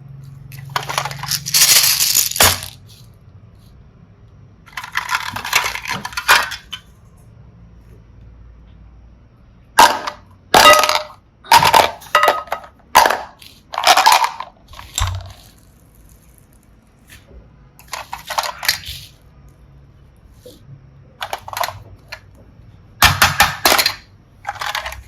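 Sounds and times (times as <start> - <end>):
small hard objects clattering: 0.5 - 3.0, 4.7 - 6.8, 9.8 - 16.7, 17.8 - 19.2, 23.0 - 25.0.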